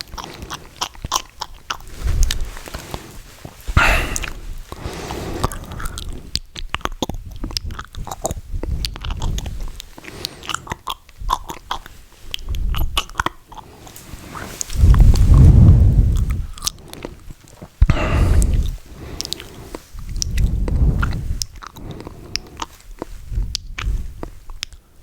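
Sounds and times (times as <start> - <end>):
wet mouth clicks and smacks: 3.8 - 15.2, 16.2 - 24.9.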